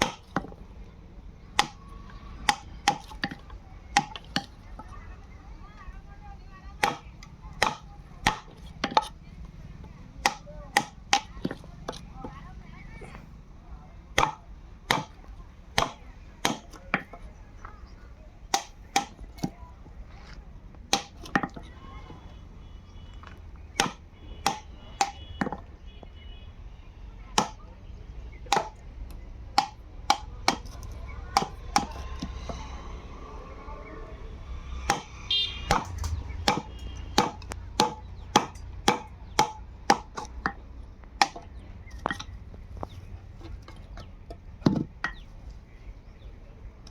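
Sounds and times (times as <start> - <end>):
hammer striking wood: 0.0 - 0.6, 1.6 - 1.8, 2.4 - 4.5, 6.8 - 9.1, 10.2 - 12.0, 14.2 - 15.2, 15.8 - 17.2, 18.5 - 19.5, 20.9 - 21.6, 23.3 - 25.6, 27.4 - 27.6, 28.5 - 28.8, 29.6 - 32.4, 34.8 - 40.6, 41.2 - 42.9.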